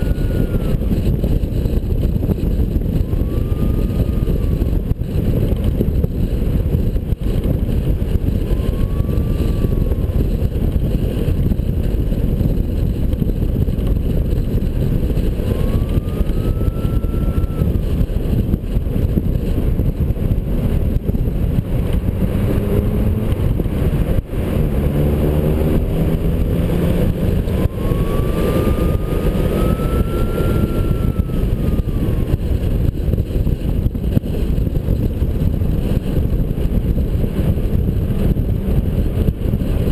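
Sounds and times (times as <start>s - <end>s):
faint whine: 0.0s - 11.7s, 12.6s - 20.1s, 26.4s - 33.4s
vehicle engine accelerating: 0.0s - 39.9s
wind and road noise: 0.0s - 39.9s.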